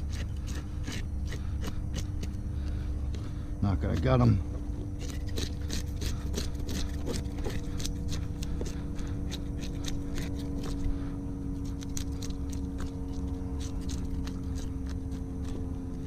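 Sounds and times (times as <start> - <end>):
knife scraping fish: 0.0 - 2.4, 5.0 - 15.2
low engine hum: 0.0 - 16.0.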